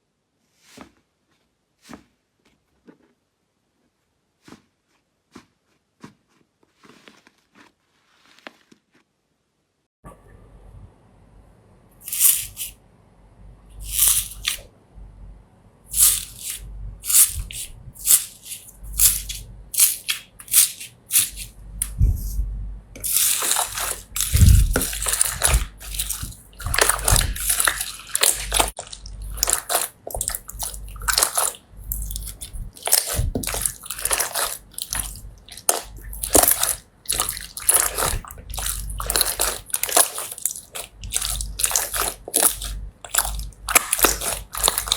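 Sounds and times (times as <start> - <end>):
slime squishing by hand: 13.8 - 14.6, 15.9 - 44.9.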